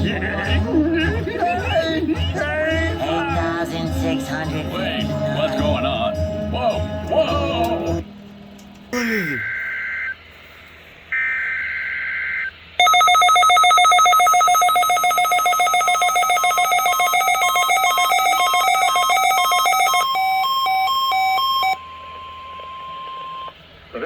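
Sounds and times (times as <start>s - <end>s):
rasping data burst: 9.0s - 10.3s
warbling electronic alarm: 9.4s - 10.3s, 11.1s - 23.6s.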